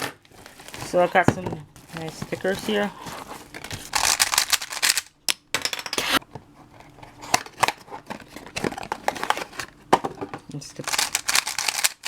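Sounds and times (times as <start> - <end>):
packaging rustling: 0.0 - 5.1, 10.8 - 12.0
plastic puzzle clicks: 10.8 - 12.0.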